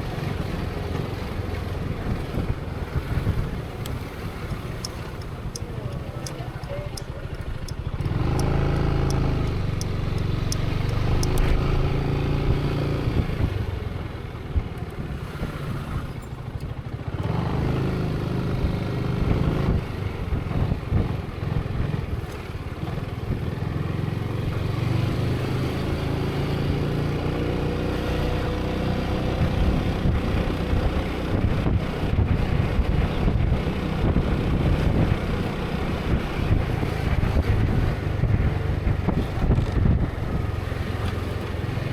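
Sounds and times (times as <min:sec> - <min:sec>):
motorcycle engine revving: 0:00.0 - 0:41.9
light regular ticking: 0:03.0 - 0:12.1.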